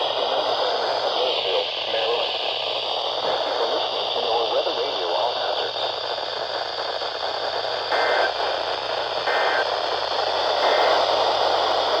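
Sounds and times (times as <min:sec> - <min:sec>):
radio static hiss: 0:00.0 - 0:12.0
two-tone data bursts: 0:07.9 - 0:08.5, 0:09.2 - 0:09.7, 0:10.6 - 0:11.1.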